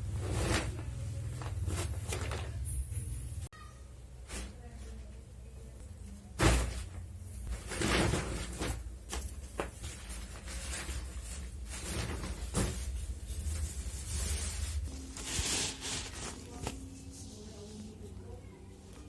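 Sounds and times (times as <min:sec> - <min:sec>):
packaging rustling: 0:09.2 - 0:17.0.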